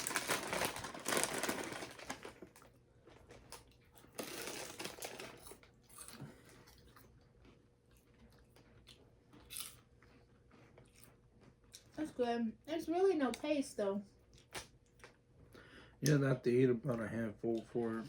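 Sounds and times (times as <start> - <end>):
snack bag rustling: 0.0 - 6.1
person crunching popcorn: 0.0 - 12.0.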